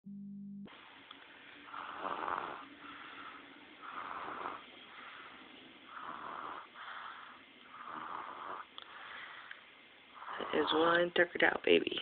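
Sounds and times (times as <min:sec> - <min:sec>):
baby snoring: 0:01.6 - 0:09.5, 0:10.1 - 0:11.0.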